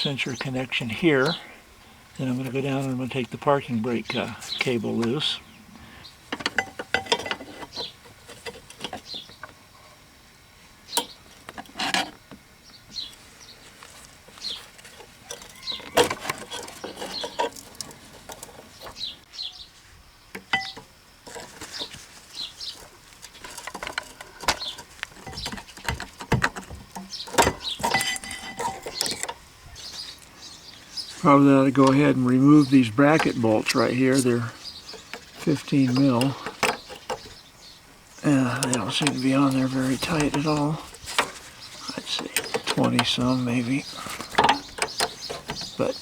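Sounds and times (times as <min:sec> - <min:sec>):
birds chirping faintly: 0:00.0 - 0:46.0
clicks and knocks of hand work: 0:06.3 - 0:09.6, 0:14.3 - 0:19.0, 0:22.7 - 0:29.4, 0:33.2 - 0:37.4, 0:38.5 - 0:46.0.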